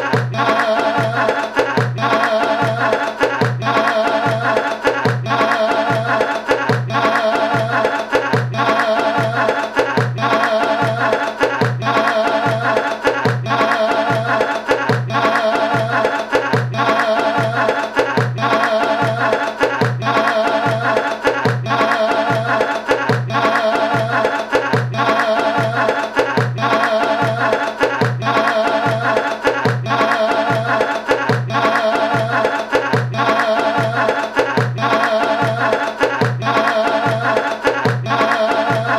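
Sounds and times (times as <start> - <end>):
music with steady drum beat: 0.0 - 38.9.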